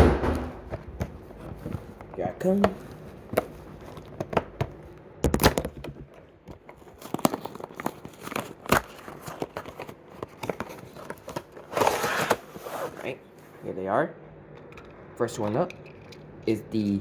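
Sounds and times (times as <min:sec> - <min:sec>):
cardboard and plastic cracking: 0:00.0 - 0:13.1
packaging tearing and crinkling: 0:05.2 - 0:05.9, 0:06.5 - 0:13.1.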